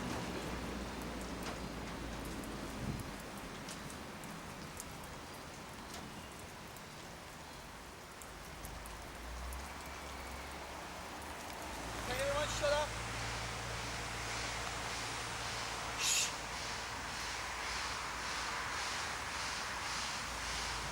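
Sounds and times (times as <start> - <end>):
train rumbling: 0.0 - 4.2, 11.0 - 20.9
steady rain falling: 0.0 - 20.9.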